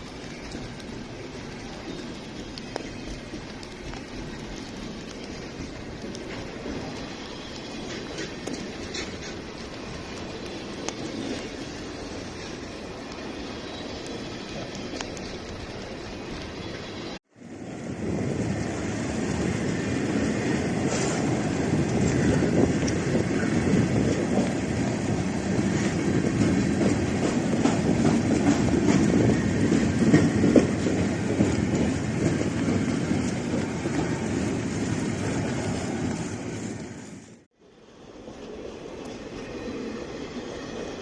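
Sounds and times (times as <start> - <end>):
freight train wheels clattering: 0.0 - 17.2, 20.8 - 36.5
heavy rain and water: 0.0 - 17.2.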